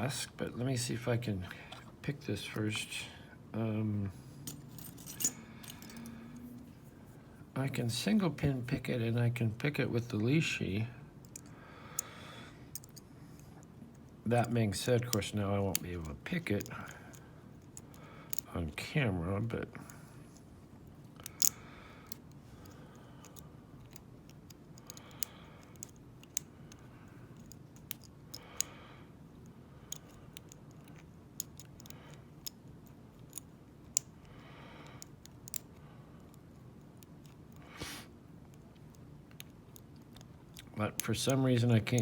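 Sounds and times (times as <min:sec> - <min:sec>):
lock pick clicking in padlock: 0:29.9 - 0:34.2, 0:35.0 - 0:36.4.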